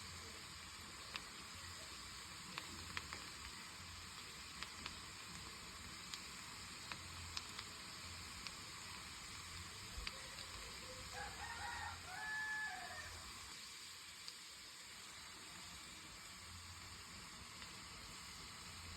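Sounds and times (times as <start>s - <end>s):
steady background hiss: 0.0s - 18.9s
rooster crowing: 11.1s - 13.4s.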